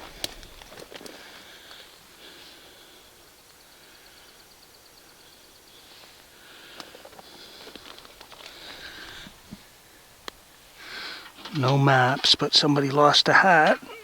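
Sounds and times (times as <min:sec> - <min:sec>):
distant animal calling: 0:13.4 - 0:14.0.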